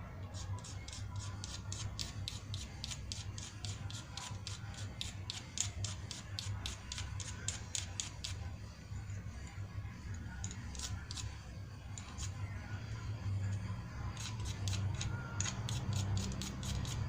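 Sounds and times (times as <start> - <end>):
steel scraping flint striker: 0.4 - 8.4, 10.4 - 11.4, 12.0 - 12.4, 14.1 - 17.0.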